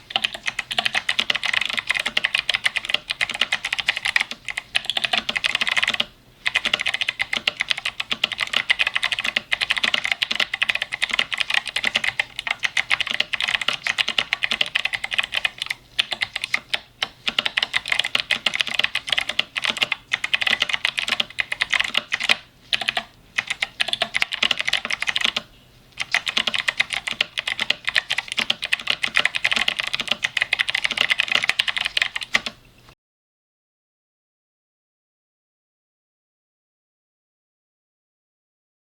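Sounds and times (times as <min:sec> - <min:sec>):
fast typing on clicky keyboard: 0:00.1 - 0:32.6.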